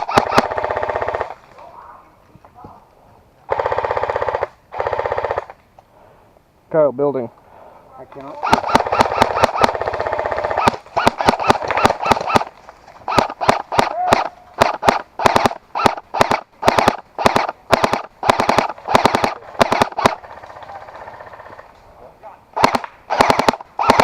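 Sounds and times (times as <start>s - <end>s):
airsoft guns firing: 0.0s - 1.4s, 3.5s - 5.6s, 8.2s - 21.6s, 22.6s - 24.0s.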